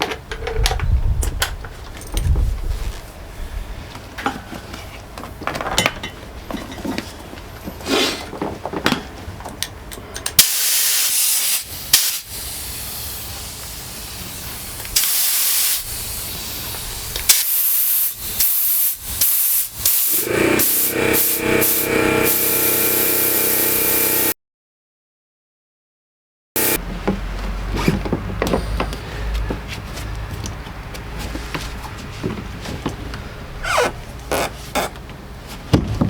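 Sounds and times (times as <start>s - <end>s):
light clicks and knocks of tools: 8.8s - 10.4s
pressurised air hissing: 10.4s - 24.3s, 26.6s - 26.8s.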